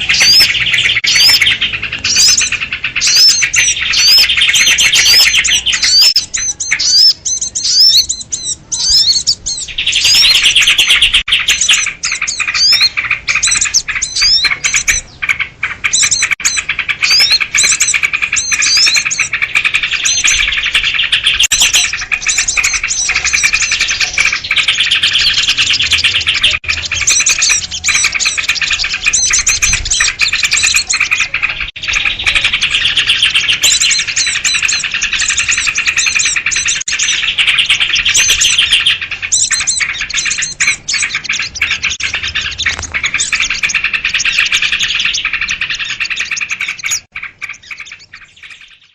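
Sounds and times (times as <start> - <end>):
small birds chirping: 0.0 - 48.9.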